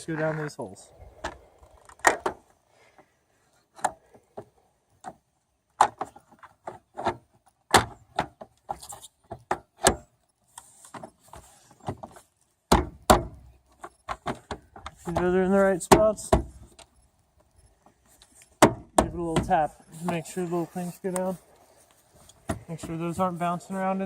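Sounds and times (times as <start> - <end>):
clicks and rattles of car spoiler: 3.7 - 19.6.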